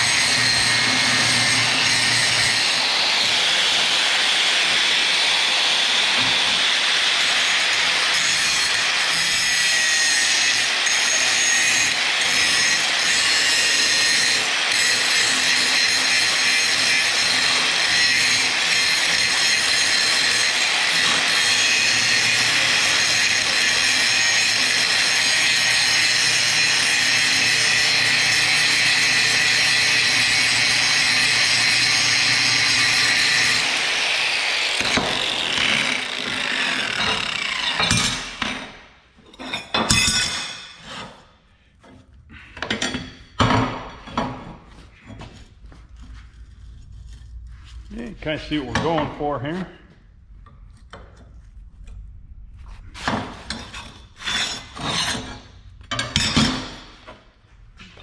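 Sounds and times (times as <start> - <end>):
power grinder grinding steel: 0.0 - 38.8.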